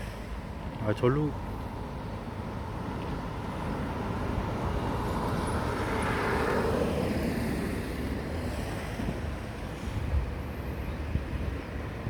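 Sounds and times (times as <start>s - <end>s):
road vehicle passing by: 2.6s - 10.8s
wind rumble on microphone: 6.8s - 12.0s.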